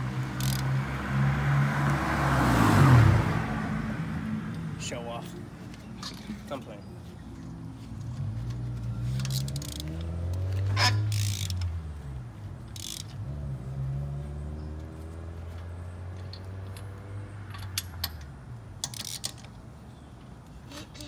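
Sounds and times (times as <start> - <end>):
car engine accelerating: 8.1 - 12.3, 13.1 - 17.5.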